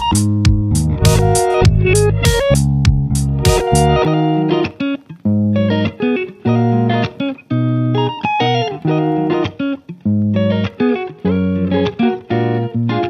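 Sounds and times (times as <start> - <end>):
percussion: 0.0 - 4.0
plucked guitar music: 0.0 - 13.0.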